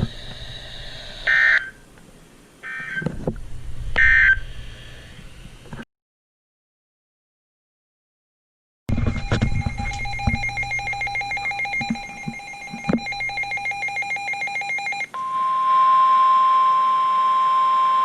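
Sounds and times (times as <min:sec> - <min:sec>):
steady single-pitched alarm tone: 0:08.9 - 0:15.4
warbling two-tone alarm: 0:08.9 - 0:18.0.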